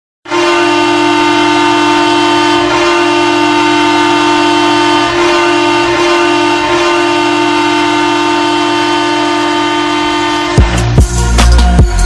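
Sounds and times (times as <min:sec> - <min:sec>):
goal horn blast: 0:00.2 - 0:11.9.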